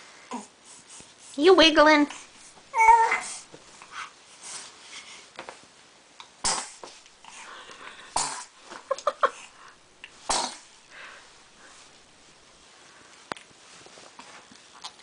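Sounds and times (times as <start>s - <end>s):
baby sneezing: 6.4s - 6.9s, 8.1s - 8.6s, 10.2s - 10.7s.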